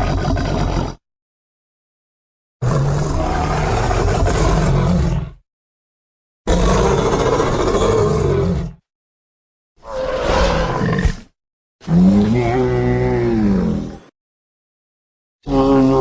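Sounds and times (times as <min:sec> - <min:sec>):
deep creature roars: 0:02.6 - 0:05.4, 0:06.5 - 0:08.8, 0:09.8 - 0:11.2, 0:11.8 - 0:14.0.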